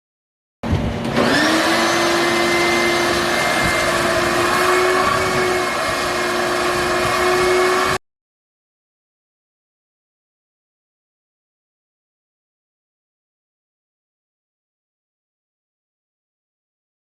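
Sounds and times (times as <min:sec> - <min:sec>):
angle grinder cutting steel: 0:01.1 - 0:08.0.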